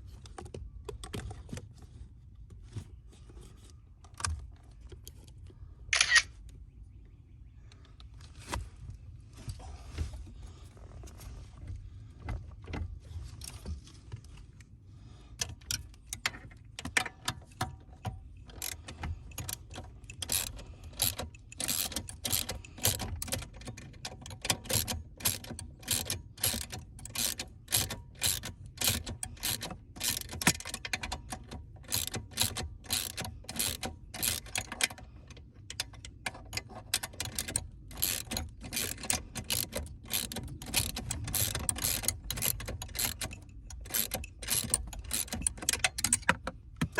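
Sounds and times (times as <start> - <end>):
tools and car parts clattering: 30.2 - 46.9.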